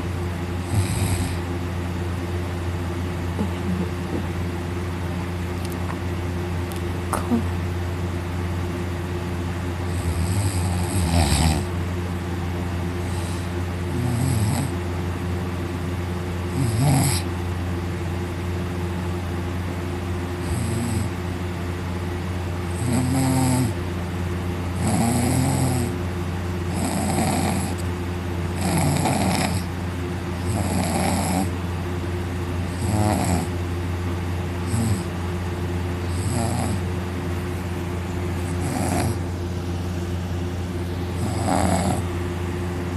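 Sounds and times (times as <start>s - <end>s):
steady low hum: 0.0s - 42.9s
man snoring loudly: 0.6s - 1.5s, 9.9s - 11.7s, 13.1s - 14.8s, 16.5s - 17.3s, 20.4s - 21.2s, 22.7s - 23.8s, 24.8s - 26.0s, 26.7s - 27.8s, 28.6s - 29.7s, 30.4s - 31.6s, 32.7s - 33.6s, 34.6s - 35.1s, 36.0s - 36.9s, 38.4s - 39.2s, 41.2s - 42.1s.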